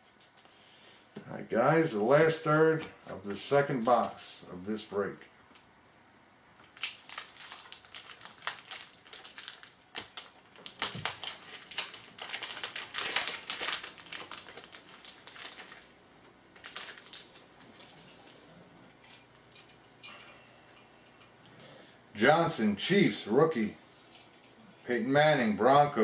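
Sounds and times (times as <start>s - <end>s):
card pack wrappers crinkling: 6.6s - 18.5s.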